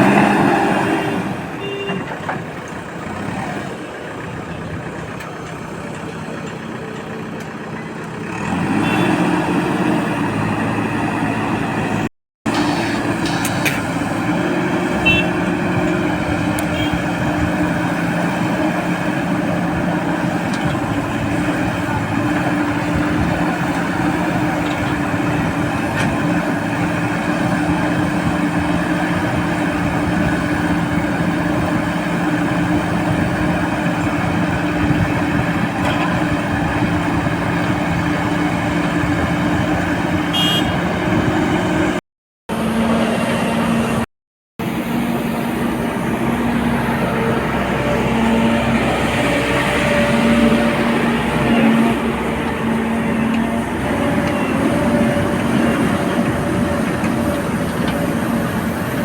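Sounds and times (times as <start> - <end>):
diesel engine running steadily: 0.0 - 59.0.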